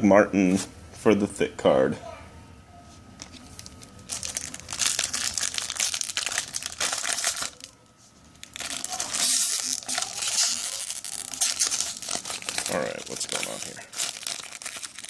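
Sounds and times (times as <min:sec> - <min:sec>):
foil wrapper crinkling: 0:03.2 - 0:15.0.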